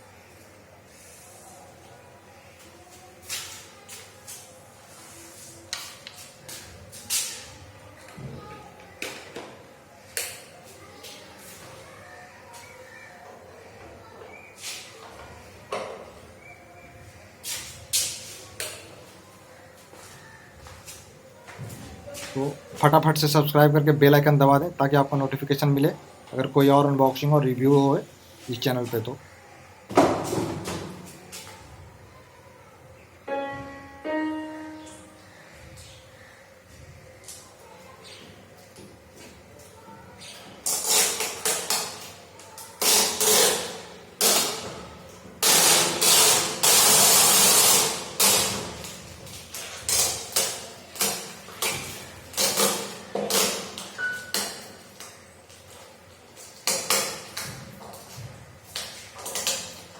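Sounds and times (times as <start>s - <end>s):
electronic keyboard notes: 33.3s - 35.3s.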